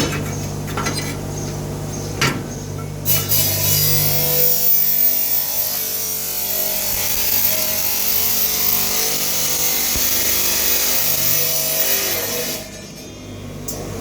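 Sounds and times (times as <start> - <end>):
power tool grinding metal: 3.0 - 13.2.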